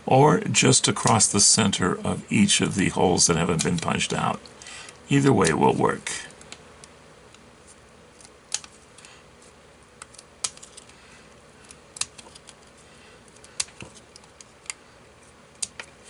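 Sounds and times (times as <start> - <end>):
scissors snipping card: 10.0 - 10.9.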